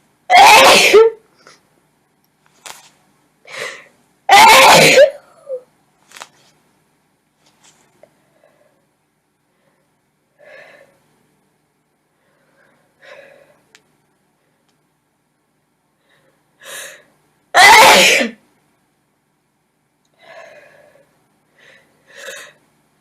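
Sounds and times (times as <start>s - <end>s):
woman sneezing: 0.3s - 1.2s, 4.3s - 5.6s, 17.6s - 18.4s
breathing: 3.5s - 4.0s, 8.1s - 11.0s, 12.1s - 13.7s, 16.0s - 17.2s, 20.2s - 22.6s.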